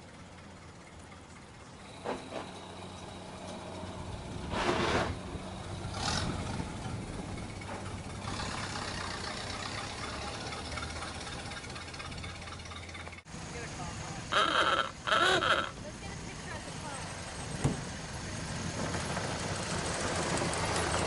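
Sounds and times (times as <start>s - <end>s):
car engine idling: 0.0s - 21.0s.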